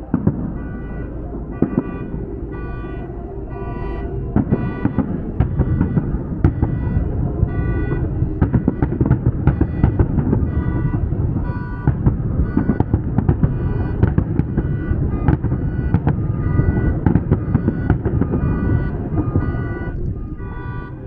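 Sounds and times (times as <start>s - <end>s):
pulsing electronic tone: 0.0s - 21.0s
fireworks booms: 0.1s - 3.0s, 4.4s - 20.9s
fireworks crackling and popping: 4.4s - 20.8s.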